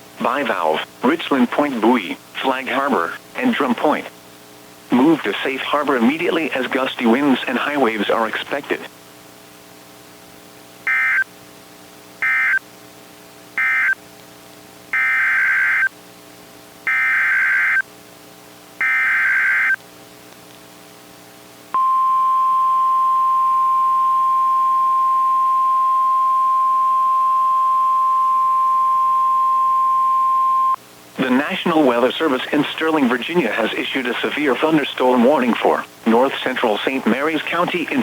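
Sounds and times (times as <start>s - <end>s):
faint steady hum: 0.0s - 38.0s
weather radio alarm tone: 10.9s - 11.3s, 12.2s - 12.6s, 13.6s - 14.0s, 15.0s - 15.9s, 16.9s - 17.8s, 18.8s - 19.8s, 21.8s - 31.4s
buzzy data bursts: 15.0s - 15.9s, 18.8s - 19.8s.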